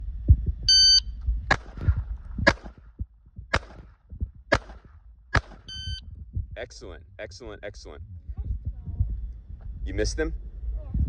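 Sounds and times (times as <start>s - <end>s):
shot timer beep: 0.7s - 1.1s, 5.6s - 6.0s
handgun shots: 1.5s - 2.8s, 3.5s - 3.9s, 4.5s - 5.7s.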